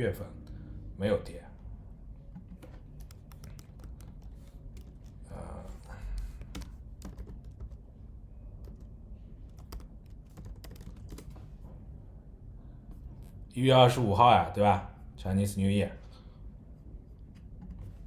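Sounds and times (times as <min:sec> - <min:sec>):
keyboard typing clicks: 0:02.3 - 0:05.2, 0:06.2 - 0:07.8, 0:09.5 - 0:11.5.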